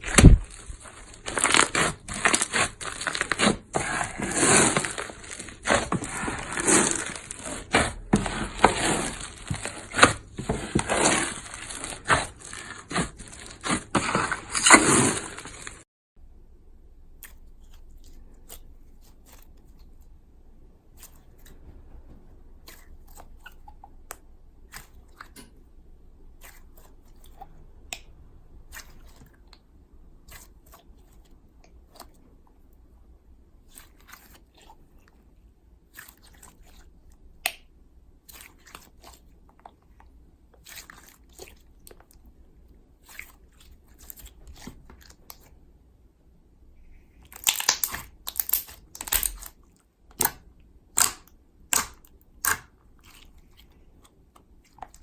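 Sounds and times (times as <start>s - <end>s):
slime clicking and popping: 47.3s - 49.5s, 50.1s - 52.7s.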